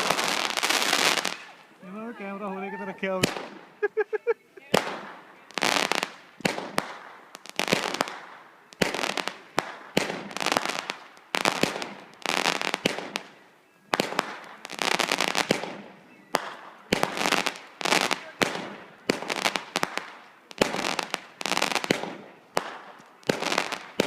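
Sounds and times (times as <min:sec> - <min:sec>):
fireworks popping and crackling: 0:00.0 - 0:01.8, 0:03.0 - 0:03.9, 0:04.6 - 0:24.0.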